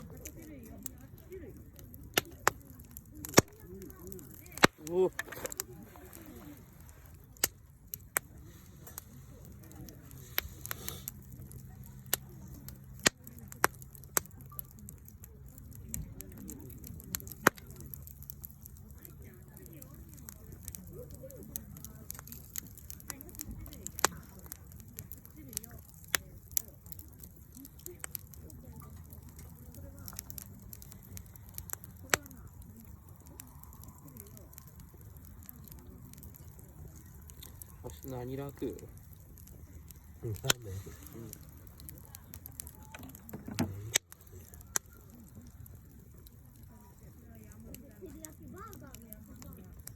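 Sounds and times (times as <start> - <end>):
campfire crackling and popping: 0.0 - 49.9.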